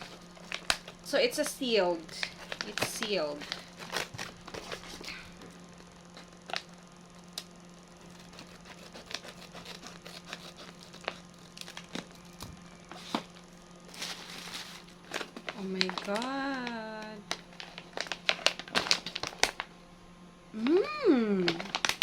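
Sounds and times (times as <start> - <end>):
plastic snack bag crinkling: 0.0 - 1.0, 2.1 - 5.1, 10.2 - 12.3, 13.9 - 19.7, 21.4 - 22.0.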